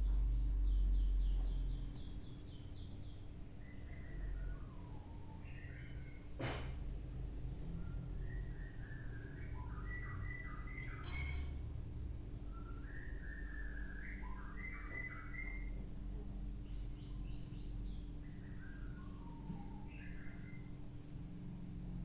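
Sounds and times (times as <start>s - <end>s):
bird singing whistled phrases: 7.8s - 11.2s, 12.4s - 15.9s, 16.9s - 20.8s.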